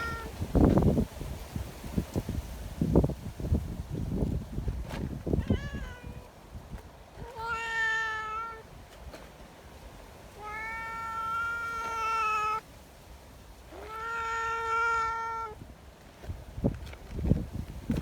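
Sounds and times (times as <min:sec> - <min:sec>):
cat meowing: 0:00.0 - 0:00.3, 0:05.4 - 0:06.3, 0:07.2 - 0:08.7, 0:10.4 - 0:12.6, 0:13.7 - 0:15.6.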